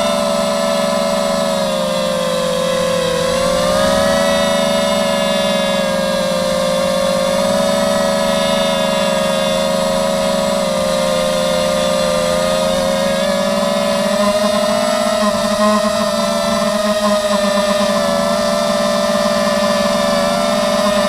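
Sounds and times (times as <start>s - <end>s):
drone motors whining: 0.0s - 21.0s.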